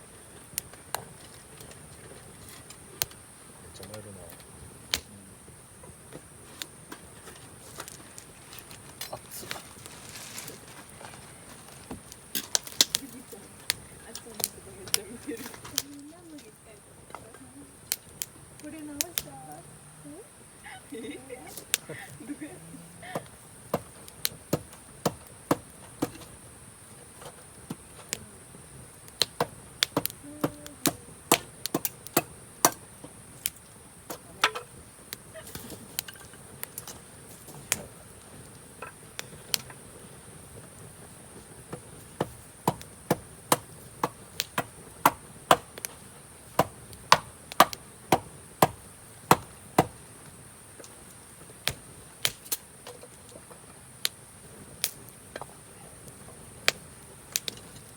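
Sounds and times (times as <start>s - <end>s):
insect chorus: 0.0s - 57.9s
wood crackling in a campfire: 0.0s - 57.9s.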